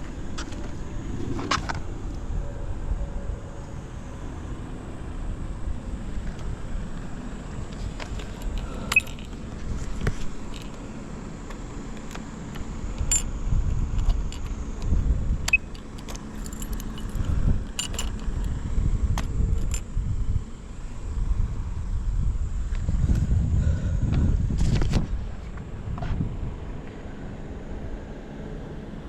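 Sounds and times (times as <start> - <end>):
metallic clicks and jingles: 6.3 - 13.3, 13.9 - 14.6, 15.4 - 20.0.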